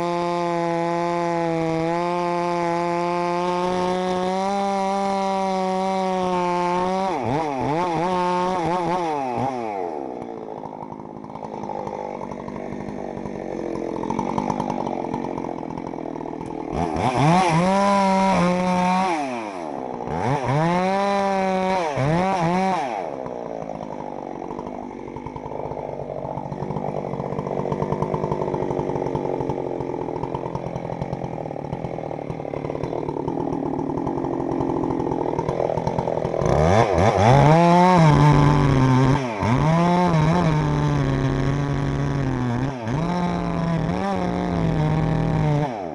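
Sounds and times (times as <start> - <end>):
chainsaw revving: 0.0 - 45.9.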